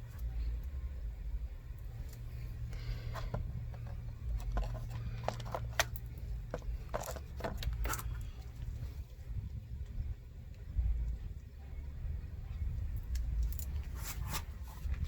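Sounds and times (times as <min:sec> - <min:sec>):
low steady rumble: 0:00.0 - 0:15.0
hands scraping and clicking plastic: 0:02.1 - 0:08.8.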